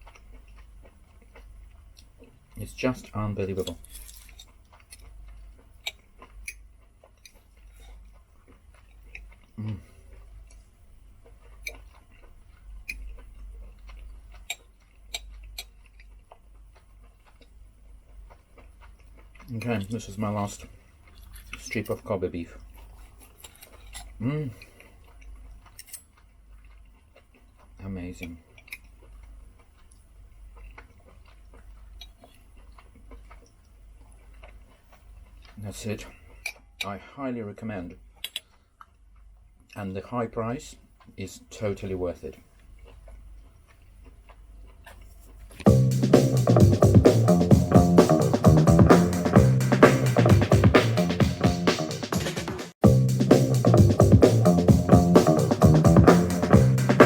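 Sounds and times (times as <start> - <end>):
eating clicks and ticks: 0.0 - 36.9
person chewing: 0.0 - 36.9, 38.0 - 39.8, 40.8 - 41.6, 42.2 - 52.4
low voice hum: 9.6 - 10.0
steady low hum: 45.5 - 51.9, 52.8 - 57.0.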